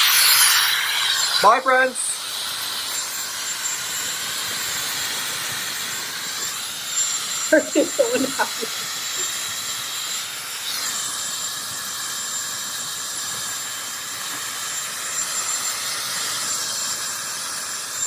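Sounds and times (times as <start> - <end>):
hair dryer blowing: 0.0 - 18.0.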